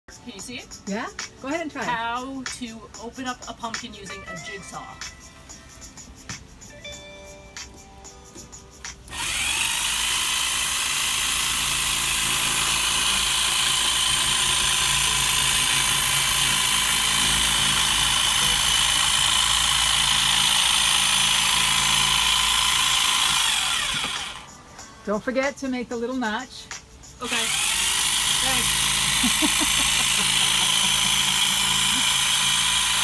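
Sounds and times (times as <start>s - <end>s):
electric jigsaw cutting: 9.1s - 24.5s, 27.2s - 33.0s.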